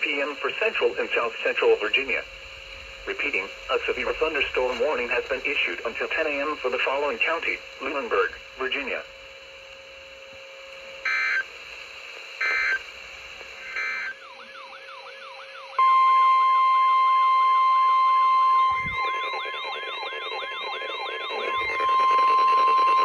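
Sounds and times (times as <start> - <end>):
steady warning alarm tone: 0.0 - 23.0
warbling alarm: 0.5 - 11.6, 12.2 - 23.0
squawking data tones: 0.7 - 9.3, 12.4 - 12.8, 18.6 - 23.0.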